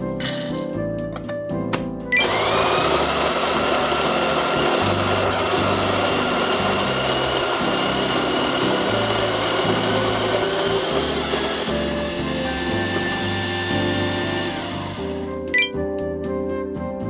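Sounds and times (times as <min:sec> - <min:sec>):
background music: 0:00.0 - 0:17.0
electric coffee grinder grinding: 0:02.2 - 0:15.4.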